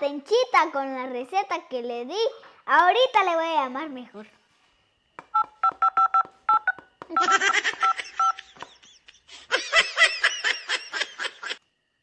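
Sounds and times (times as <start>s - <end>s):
phone keypad tones: 5.3s - 8.4s
high-pitched laughter: 7.1s - 11.7s.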